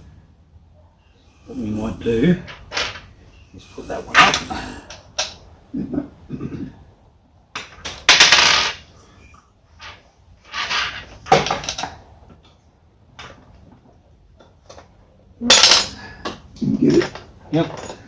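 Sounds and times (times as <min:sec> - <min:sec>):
small metal parts clinking: 0:15.5 - 0:16.0, 0:16.7 - 0:18.0.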